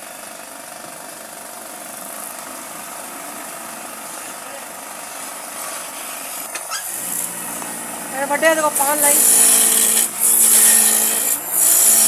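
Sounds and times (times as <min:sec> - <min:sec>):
motor humming: 0:06.8 - 0:12.0.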